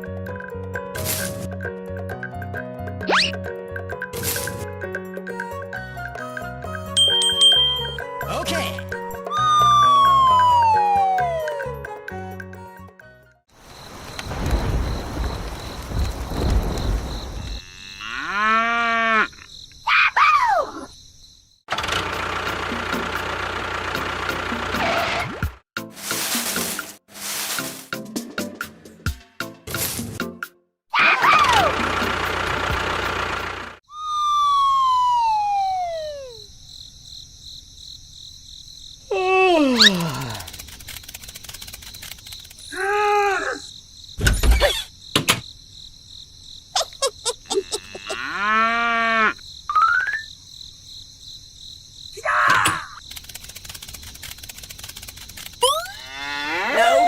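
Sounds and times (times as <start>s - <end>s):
comic falling whistle: 9.3s - 11.6s, 33.9s - 36.5s
cow mooing: 17.6s - 19.4s, 47.5s - 49.4s, 56.0s - 57.0s.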